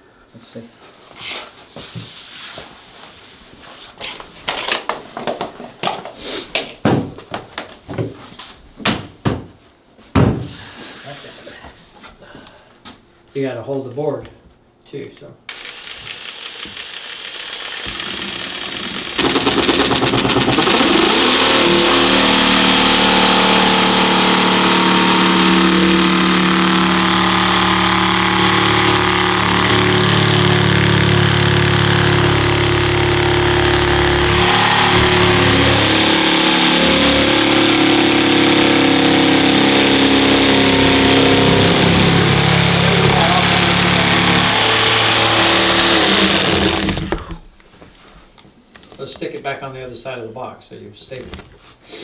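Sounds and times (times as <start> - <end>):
jigsaw cutting vinyl: 15.5 - 47.6.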